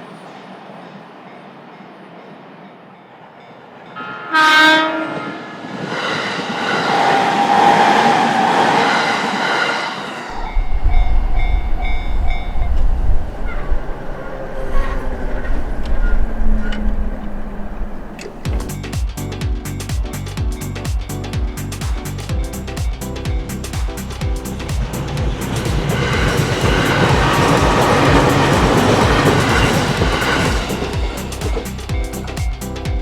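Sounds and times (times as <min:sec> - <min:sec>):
train passing rush: 0:00.0 - 0:33.0
train horn blast: 0:04.0 - 0:05.7
wheels clattering over rail joints: 0:23.6 - 0:32.8.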